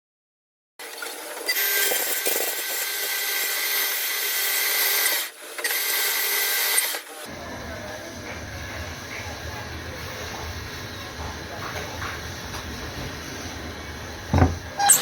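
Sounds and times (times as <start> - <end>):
power tool whining on wood: 1.4 - 7.3.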